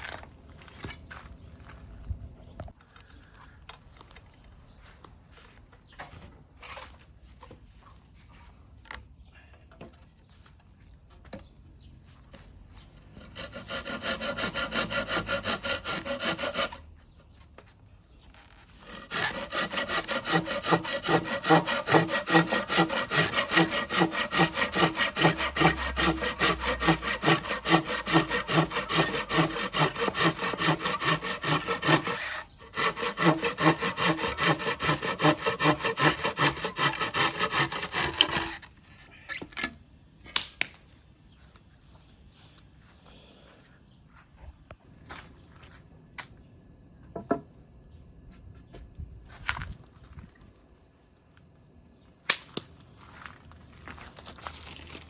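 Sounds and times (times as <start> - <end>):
hand saw cutting wood: 13.2 - 16.8, 18.8 - 38.7.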